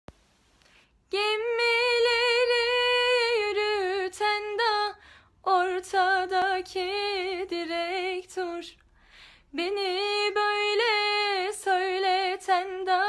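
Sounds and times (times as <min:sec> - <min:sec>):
woman singing unaccompanied: 0:01.1 - 0:08.8, 0:09.5 - 0:13.0.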